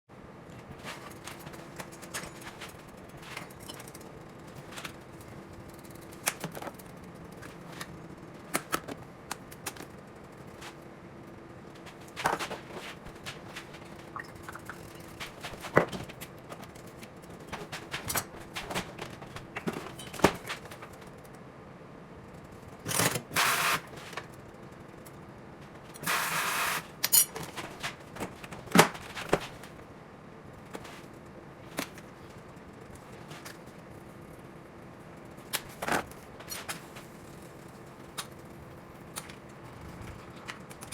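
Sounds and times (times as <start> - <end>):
utensils and dishes clinking: 27.0 - 27.5.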